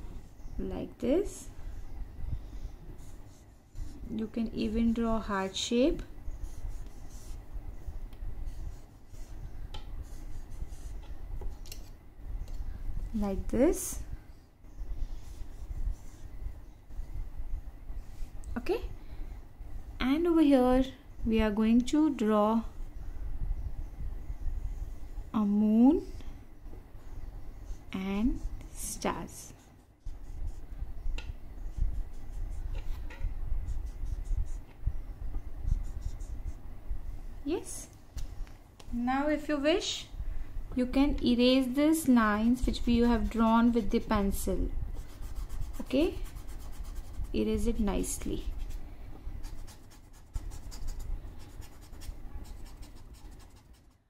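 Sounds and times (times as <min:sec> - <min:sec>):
marker pen scratching on paper: 0:06.4 - 0:07.4, 0:10.0 - 0:11.2, 0:31.7 - 0:34.7, 0:35.6 - 0:36.6, 0:42.5 - 0:44.4, 0:45.0 - 0:48.8, 0:49.4 - 0:54.0
pen scratching on paper: 0:49.4 - 0:54.0.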